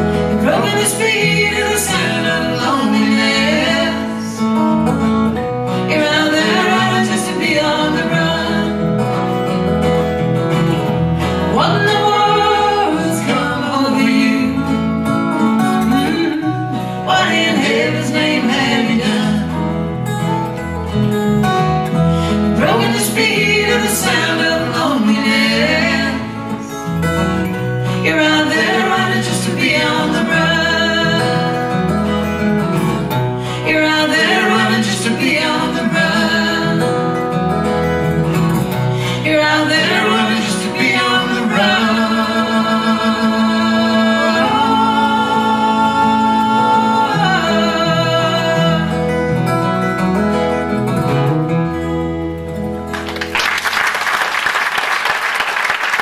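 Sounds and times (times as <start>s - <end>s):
acoustic guitar: 0.0s - 56.0s
person singing: 0.3s - 4.6s, 5.8s - 9.0s, 11.4s - 19.7s, 22.5s - 26.9s, 28.0s - 31.8s, 33.6s - 37.4s, 39.1s - 49.4s.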